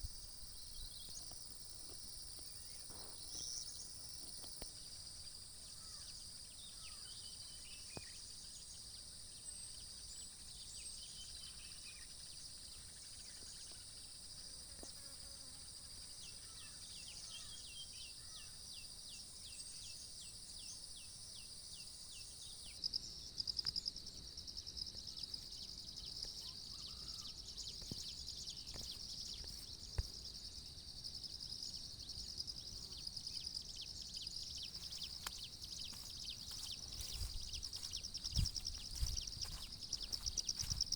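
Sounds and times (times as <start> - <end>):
high-pitched insect chorus: 0.0 - 40.9
bird calls: 26.3 - 30.2, 32.2 - 40.9.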